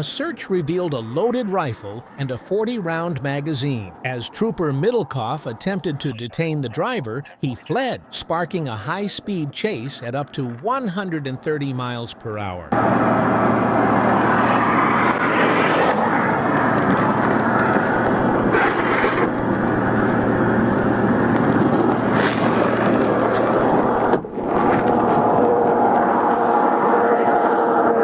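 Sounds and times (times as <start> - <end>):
vehicle roaring at high speed: 12.7 - 28.0.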